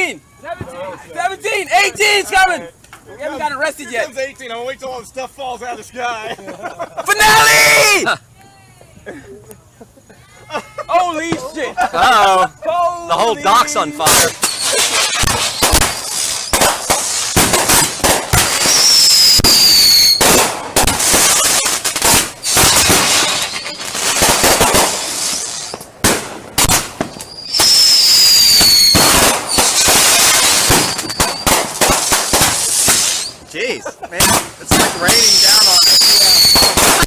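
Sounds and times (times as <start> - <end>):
fireworks bangs and crackling: 11.2 - 11.6, 13.2 - 33.5, 34.2 - 37.0
fireworks hiss: 13.2 - 33.5, 34.2 - 37.0
high descending whistles: 14.0 - 16.7, 18.4 - 20.3, 22.4 - 24.2, 27.2 - 31.7, 32.9 - 33.4, 34.9 - 37.0.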